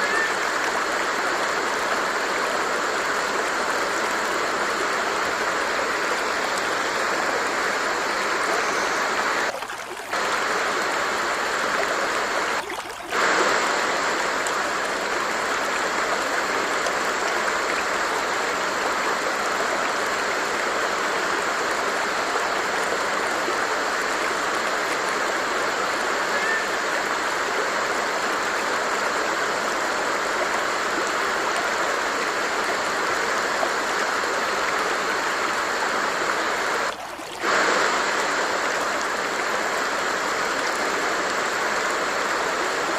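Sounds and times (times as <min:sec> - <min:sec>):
stream water flowing: 0:00.0 - 0:42.9.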